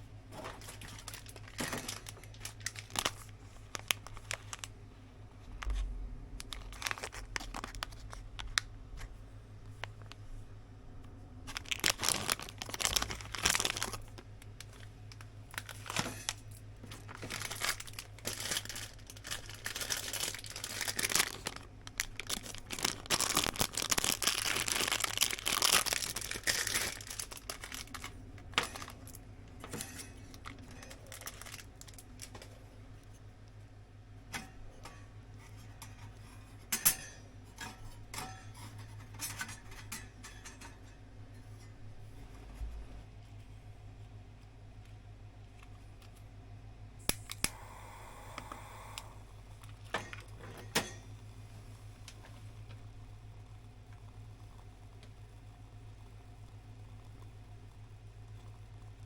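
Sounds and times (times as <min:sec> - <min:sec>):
crinkling and rustling handling noise: 0:00.2 - 0:46.4.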